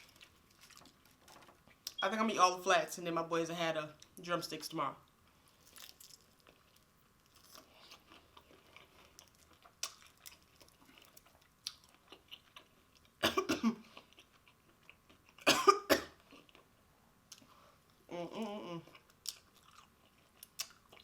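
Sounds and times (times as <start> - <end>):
wet chewing: 5.6 - 13.2, 18.9 - 21.0
person coughing: 13.2 - 13.8, 15.5 - 16.2.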